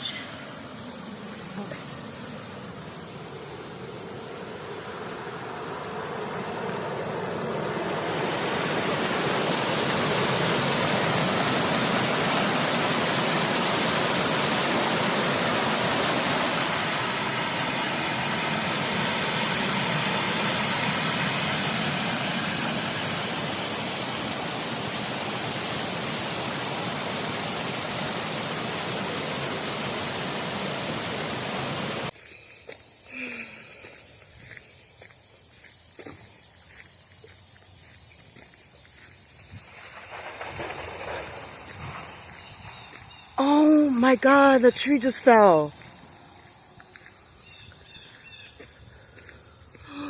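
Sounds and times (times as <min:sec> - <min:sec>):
waterfall rushing: 0:00.0 - 0:32.1.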